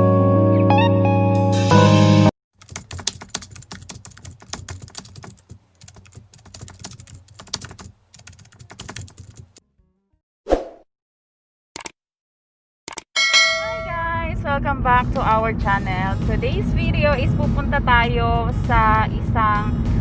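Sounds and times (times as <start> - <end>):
computer keyboard typing: 2.6 - 9.6.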